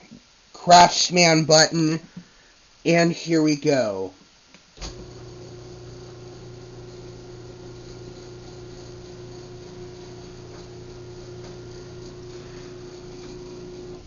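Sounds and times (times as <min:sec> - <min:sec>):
garage door opener humming: 0:04.8 - 0:14.0.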